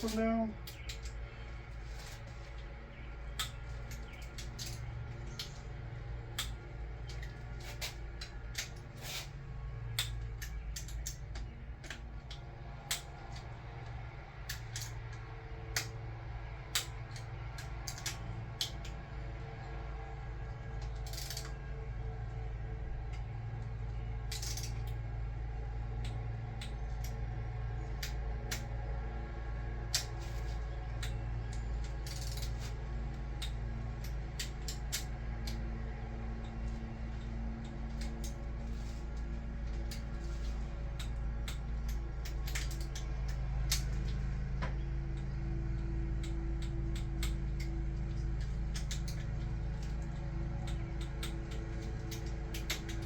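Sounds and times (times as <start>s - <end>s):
steady low hum: 0.0s - 53.0s
torque wrench ratcheting: 32.0s - 32.6s.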